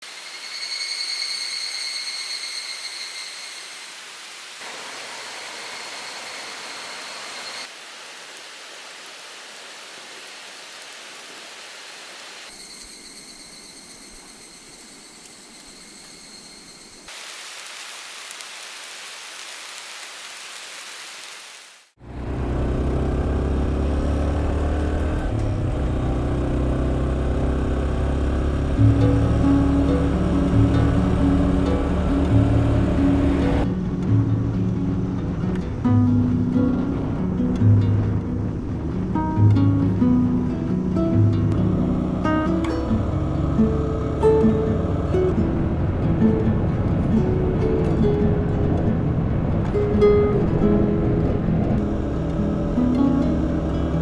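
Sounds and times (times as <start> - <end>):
cicadas calling: 0.1 - 21.4
rushing mountain stream: 2.9 - 12.5, 34.5 - 54.0
low steady held pitches: 25.3 - 54.0.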